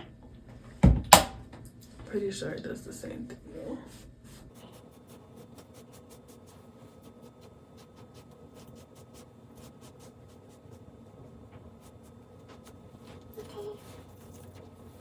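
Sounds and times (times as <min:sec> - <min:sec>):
low electrical hum: 0:00.0 - 0:15.0
faint scratching strokes: 0:03.8 - 0:15.0.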